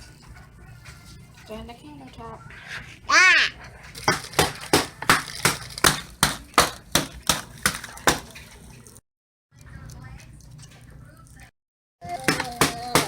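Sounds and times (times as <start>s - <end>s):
crackers pounded on countertop: 4.0s - 8.9s, 12.0s - 13.0s.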